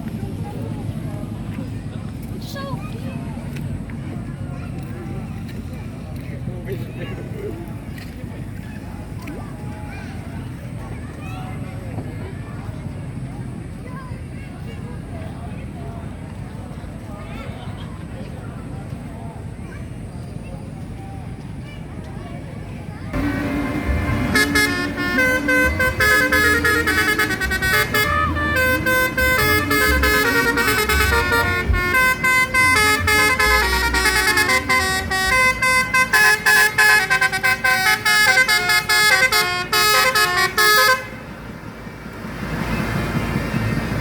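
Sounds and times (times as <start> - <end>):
bus horn playing a tune: 23.2 - 41.6.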